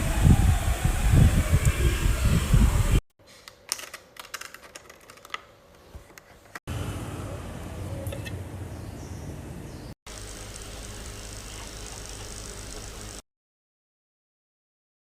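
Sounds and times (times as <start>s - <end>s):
rumbling wind-like noise: 0.0s - 3.0s.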